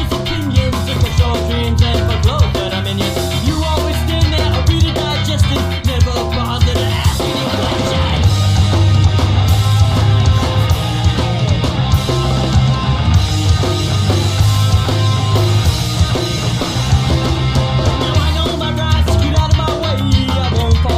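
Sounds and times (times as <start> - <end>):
drum kit: 0.0 - 20.9
electric guitar: 0.0 - 20.9
heavy bass line: 0.0 - 20.9.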